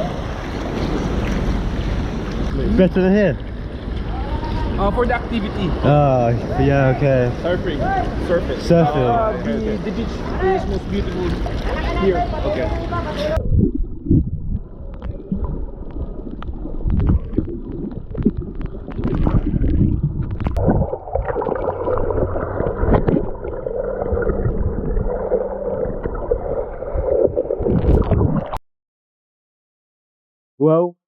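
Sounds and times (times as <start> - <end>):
muffled water sloshing: 9.9 - 28.6
underwater knocks: 13.4 - 25.1.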